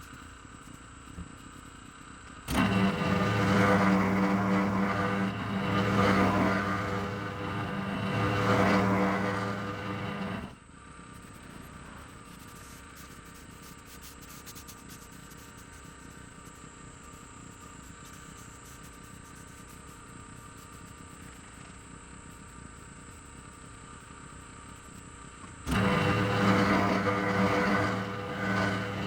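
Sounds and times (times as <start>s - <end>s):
compactor engine running: 2.5s - 10.6s, 25.7s - 29.0s.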